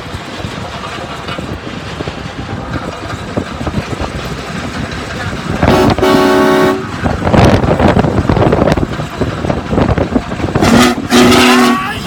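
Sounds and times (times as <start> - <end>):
car road noise: 0.0 - 12.0
wind buffeting: 0.0 - 12.0
multi-note horn blasts: 5.6 - 7.0, 10.6 - 12.0.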